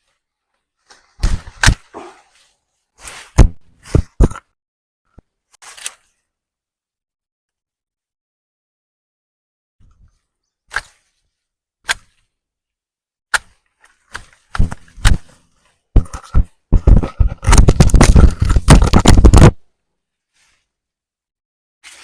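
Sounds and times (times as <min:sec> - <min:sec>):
grass crunching and tearing: 0:13.4 - 0:19.6.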